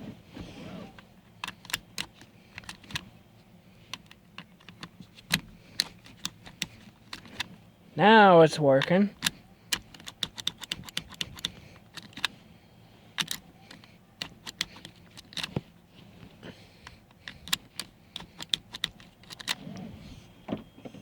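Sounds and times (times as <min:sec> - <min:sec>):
seat belt buckle clicking: 0:00.5 - 0:03.1, 0:03.9 - 0:07.6, 0:08.8 - 0:12.4, 0:13.2 - 0:15.7, 0:16.8 - 0:19.8.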